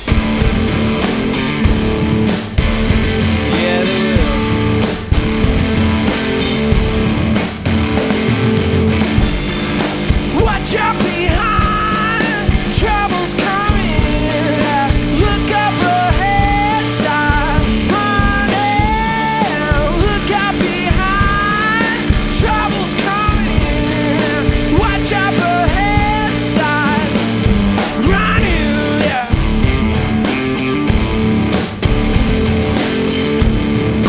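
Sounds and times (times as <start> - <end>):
drum kit: 0.0 - 34.0
electric guitar: 0.0 - 34.0
person singing: 3.4 - 4.7, 10.3 - 27.3, 28.0 - 29.5.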